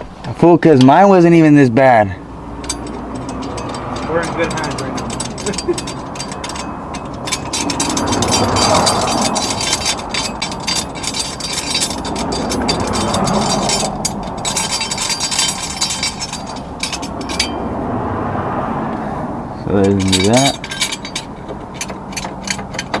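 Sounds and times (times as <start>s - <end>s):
hand ratchet clicking: 2.6s - 17.6s, 19.8s - 23.0s.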